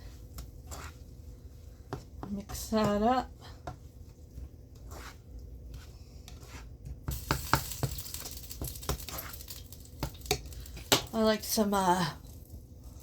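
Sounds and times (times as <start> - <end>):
spoon stirring in frying pan: 0.0 - 13.0
meat sizzling: 7.1 - 11.1.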